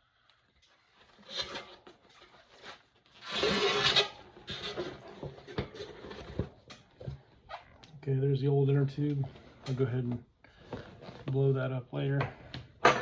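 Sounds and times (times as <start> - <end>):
rubber tube scraping against tire: 1.1 - 6.4.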